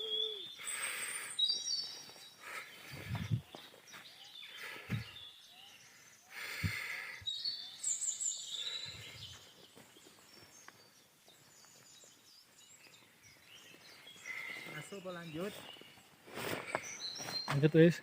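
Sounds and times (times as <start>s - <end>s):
high chirping call: 0.0s - 5.9s
dull low thumps: 2.9s - 3.6s.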